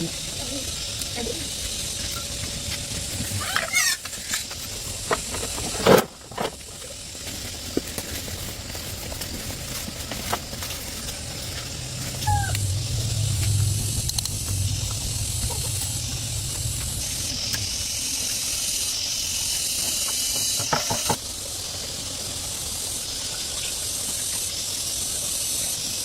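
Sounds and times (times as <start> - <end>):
low hum: 9.1 - 25.0.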